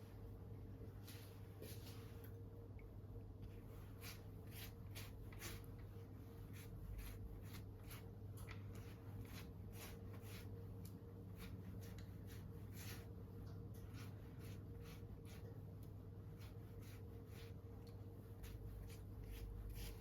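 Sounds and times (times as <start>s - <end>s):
steady low hum: 0.0s - 20.0s
faint scratching strokes: 3.5s - 10.7s, 11.3s - 13.2s, 13.8s - 15.6s, 16.2s - 20.0s.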